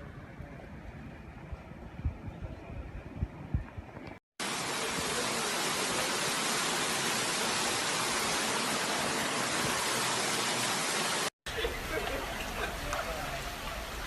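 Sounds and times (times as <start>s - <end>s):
water gushing from burst main: 4.4s - 14.0s.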